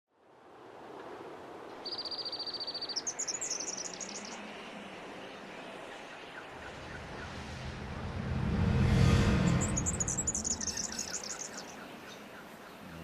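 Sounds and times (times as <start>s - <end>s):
outdoor background noise: 0.1s - 13.0s
bird trilling and chirping: 9.6s - 11.8s.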